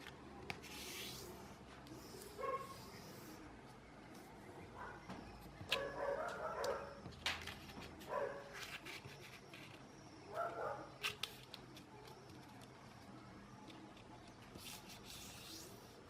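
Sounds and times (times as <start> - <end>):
dog barking: 2.4 - 2.8, 5.8 - 7.0, 8.1 - 8.5, 10.3 - 10.9.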